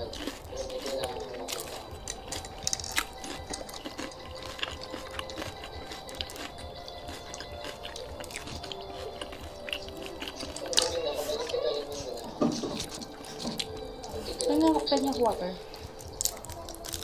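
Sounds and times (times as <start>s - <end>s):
faint background music: 0.0s - 17.0s
wet chewing: 0.0s - 17.0s.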